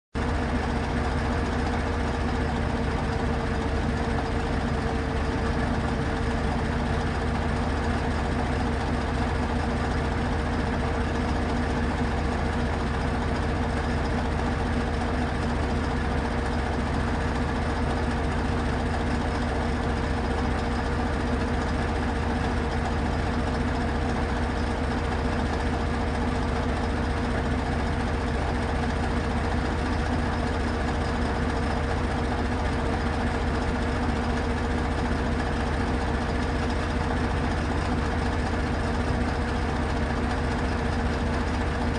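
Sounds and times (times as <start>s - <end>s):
diesel engine idling: 0.2s - 41.9s.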